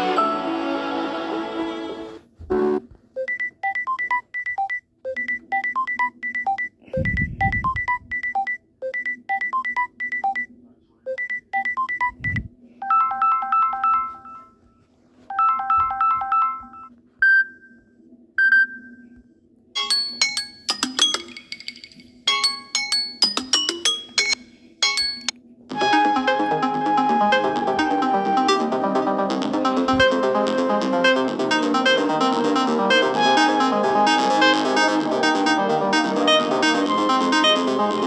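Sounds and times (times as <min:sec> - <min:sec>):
electronic beeping ringtone melody: 0:03.2 - 0:10.5, 0:11.2 - 0:14.6, 0:15.3 - 0:17.5, 0:19.8 - 0:38.0
rapid beeps: 0:03.2 - 0:10.5, 0:11.1 - 0:14.4
ringtone chimes: 0:11.6 - 0:14.6, 0:15.3 - 0:17.5, 0:19.8 - 0:38.0
chiming ringtone: 0:12.8 - 0:14.6, 0:15.3 - 0:16.9, 0:19.8 - 0:38.0.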